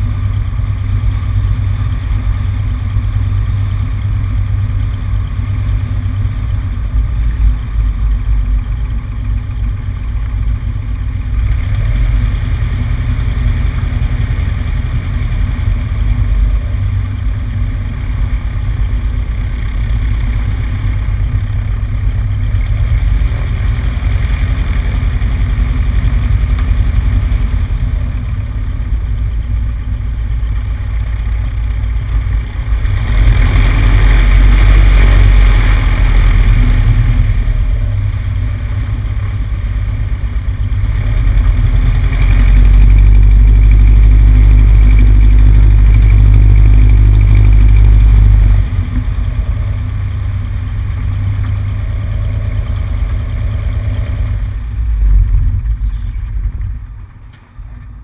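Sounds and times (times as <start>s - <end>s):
airplane engine and propeller: 0.0s - 58.0s.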